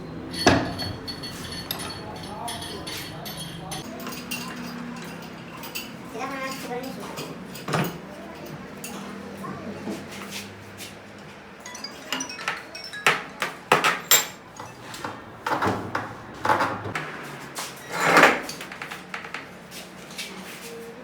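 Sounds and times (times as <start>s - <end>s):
metallic clinks and knocks: 0.3s - 9.1s, 11.6s - 17.0s.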